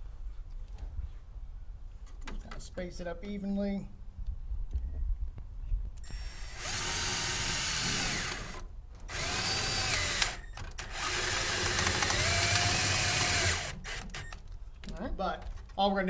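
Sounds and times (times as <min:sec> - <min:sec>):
power drill driving screws: 0:06.0 - 0:14.4.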